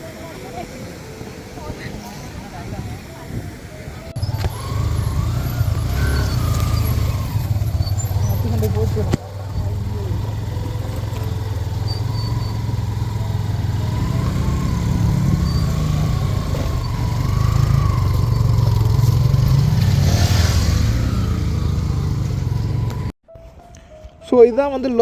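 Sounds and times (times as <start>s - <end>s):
small motorcycle engine running: 4.2s - 23.1s.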